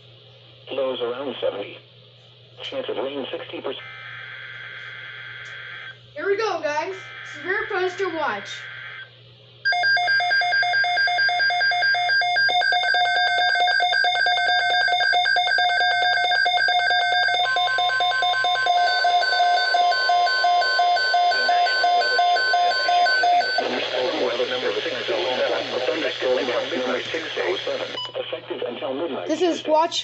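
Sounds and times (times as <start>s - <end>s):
steady radio warning tone: 2.6s - 9.1s, 11.6s - 29.8s
pulsing electronic alarm beep: 6.9s - 9.1s, 9.7s - 23.8s.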